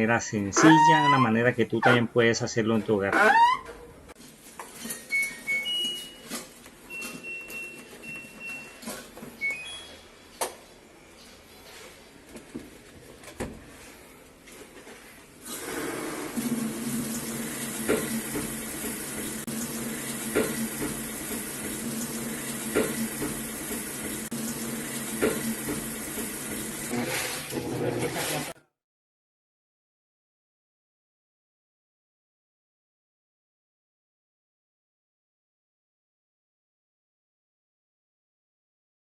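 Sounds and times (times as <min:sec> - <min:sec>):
washing machine running: 0:15.4 - 0:28.6
washing machine knocking: 0:16.4 - 0:28.4.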